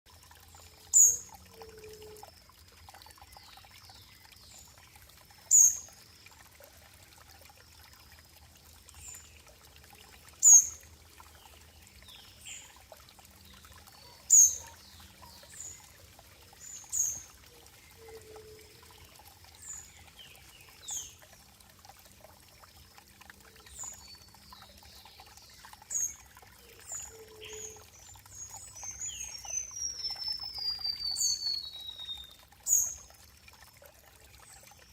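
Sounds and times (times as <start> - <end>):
water trickling and pouring: 0.1 - 34.9.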